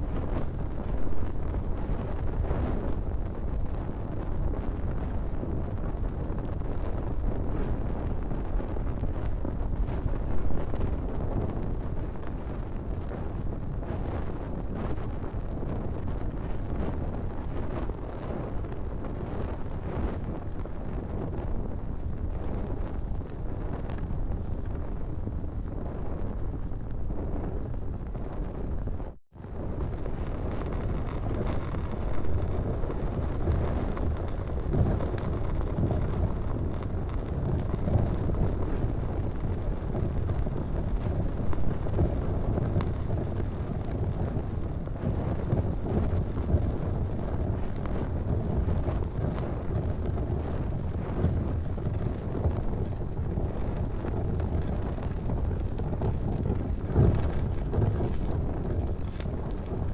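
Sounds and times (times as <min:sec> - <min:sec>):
fire crackling: 0:00.0 - 0:59.9
fire rumbling: 0:00.0 - 0:59.9.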